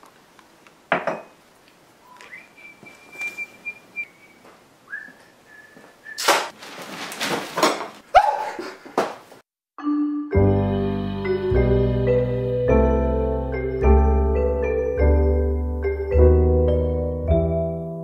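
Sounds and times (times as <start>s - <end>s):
person whistling: 2.1s - 6.3s.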